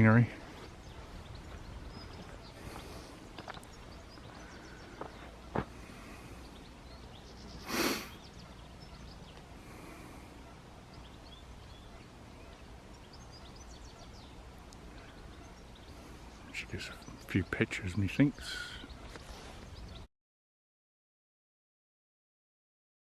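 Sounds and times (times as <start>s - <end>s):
faint bird chirps: 0.4s - 20.1s.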